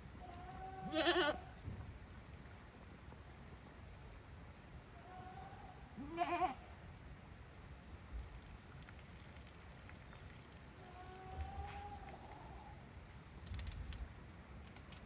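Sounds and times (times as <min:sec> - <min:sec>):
goat bleating: 0:00.6 - 0:01.5, 0:06.0 - 0:06.6.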